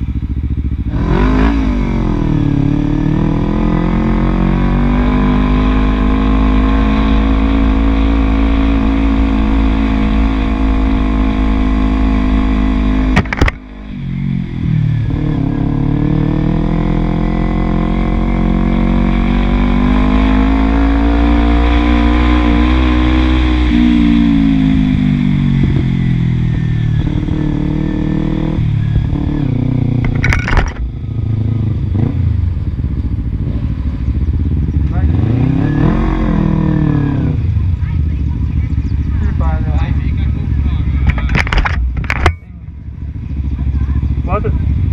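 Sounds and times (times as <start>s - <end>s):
motorcycle engine running: 0.0s - 44.9s
exhaust crack: 8.8s - 13.8s, 28.6s - 35.1s, 37.4s - 44.9s.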